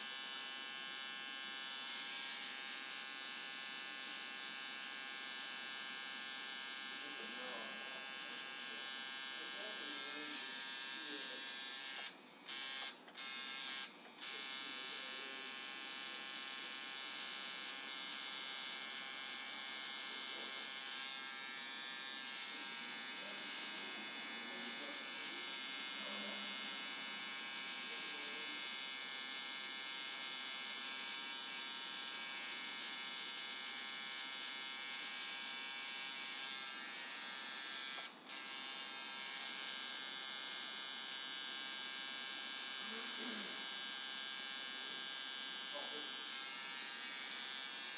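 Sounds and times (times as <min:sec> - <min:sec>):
electric tattoo machine buzzing: 0:00.0 - 0:47.9.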